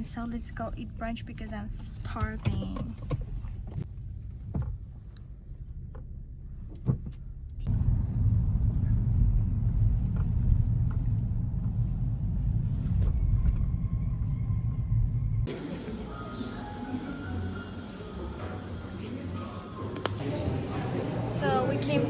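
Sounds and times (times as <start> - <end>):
car driving rumble: 0.0 - 15.5.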